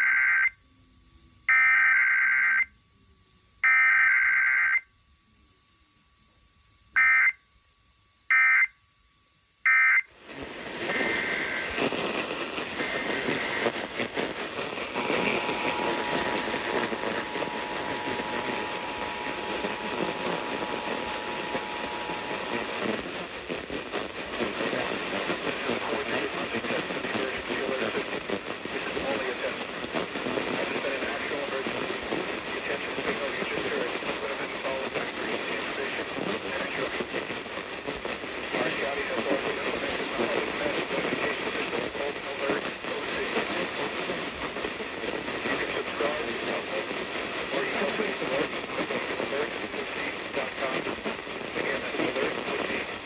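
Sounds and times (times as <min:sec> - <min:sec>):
static-like hiss: 0:09.6 - 0:53.0
short data bursts: 0:09.7 - 0:28.1.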